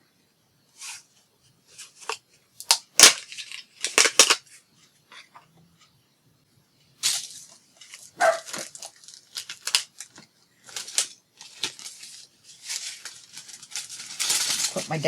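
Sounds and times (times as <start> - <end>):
paper rustling: 7.0 - 15.0.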